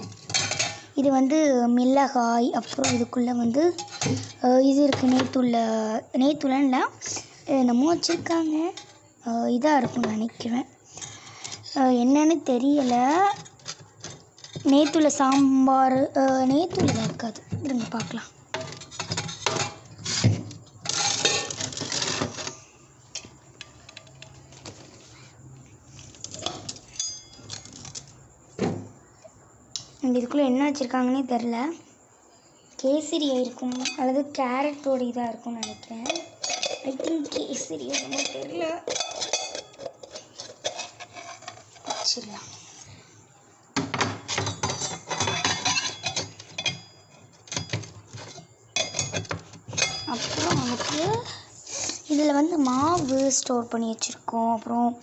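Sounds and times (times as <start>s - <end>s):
food containers clattering: 0.0s - 1.0s, 2.6s - 5.8s, 9.6s - 25.1s, 25.8s - 29.0s, 33.3s - 42.4s, 43.8s - 53.6s
plastic rustling and scraping: 11.0s - 22.8s, 23.8s - 28.3s, 36.4s - 42.9s, 44.2s - 53.6s.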